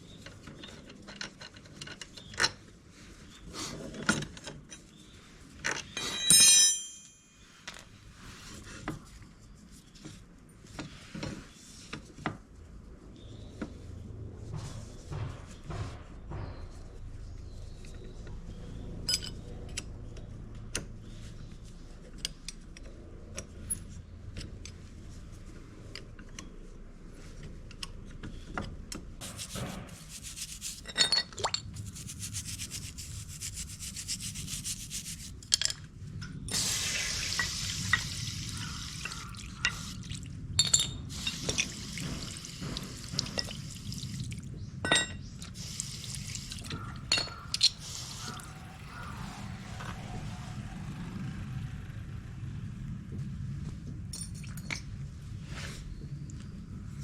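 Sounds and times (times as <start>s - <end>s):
parts being scrubbed: 29.2s - 35.4s, 45.6s - 50.8s.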